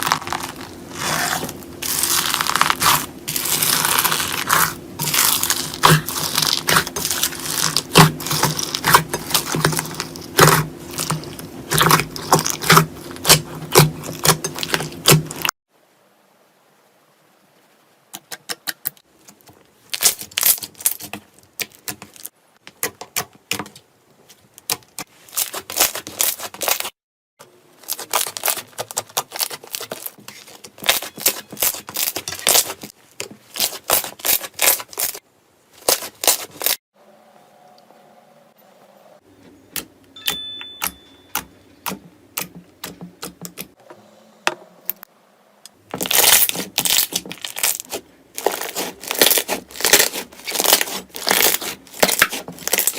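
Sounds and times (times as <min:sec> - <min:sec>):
slime squeezed crackling: 0:00.0 - 0:15.5, 0:46.0 - 0:52.9.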